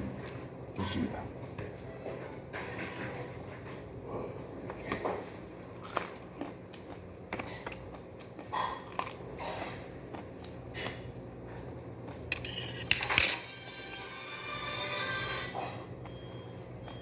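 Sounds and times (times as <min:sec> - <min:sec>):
utensils clinking against dishes: 0:11.6 - 0:16.2.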